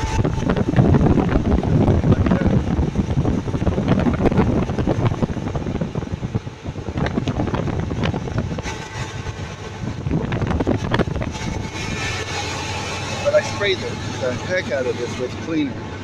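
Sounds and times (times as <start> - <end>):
microphone rubbing noise: 0.0 - 15.8
engine rumble with crackles: 0.0 - 16.0
wind on microphone: 0.0 - 16.0.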